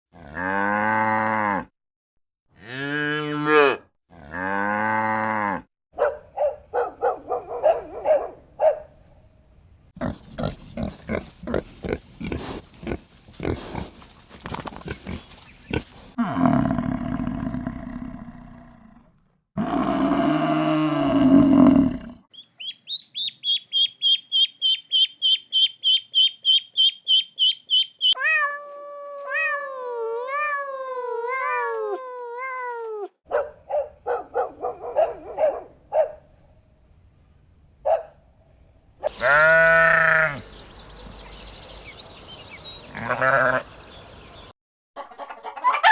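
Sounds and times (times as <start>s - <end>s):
cow mooing: 2.6s - 5.6s, 19.6s - 22.2s, 39.1s - 40.4s
high chirps: 22.3s - 28.2s
short pulsed animal calls: 22.3s - 28.2s
rough noisy animal call: 39.0s - 40.6s.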